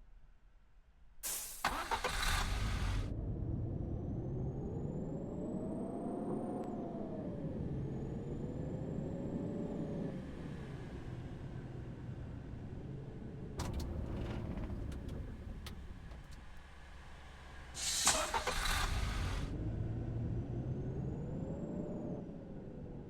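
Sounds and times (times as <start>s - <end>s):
loud rushing hiss: 1.2s - 2.0s, 17.8s - 19.4s
off-road vehicle engine running: 1.8s - 23.0s.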